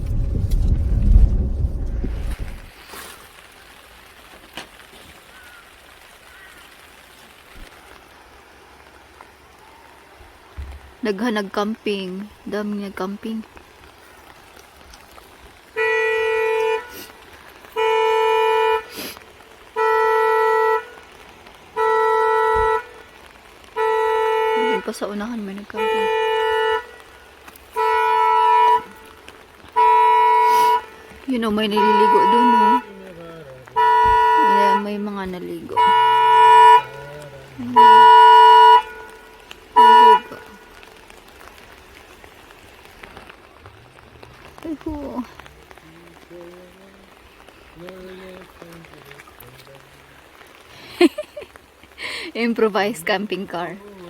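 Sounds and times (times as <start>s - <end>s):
horn beeping: 15.8s - 17.1s, 17.7s - 18.9s, 19.7s - 21.0s, 21.8s - 23.0s, 23.8s - 25.2s, 25.8s - 27.2s, 27.8s - 40.7s.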